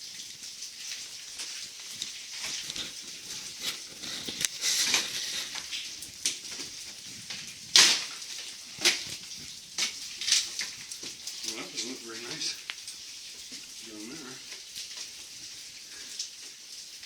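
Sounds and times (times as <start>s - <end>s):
rock cracking: 1.6s - 11.7s.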